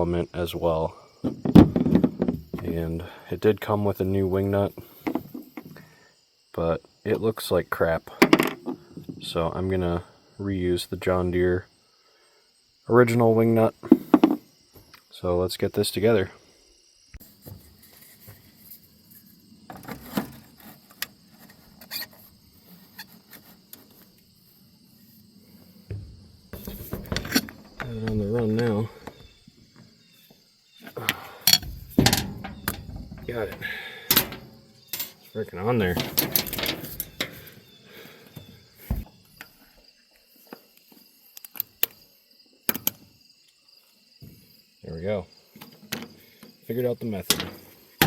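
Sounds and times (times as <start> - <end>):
dull thump: 1.2 - 2.7, 25.8 - 29.4, 31.6 - 34.7, 38.8 - 39.2
parts clicking and knocking: 25.9 - 29.9, 30.9 - 37.6, 47.2 - 48.0
clicks and knocks of tools: 31.1 - 35.2, 36.0 - 37.4.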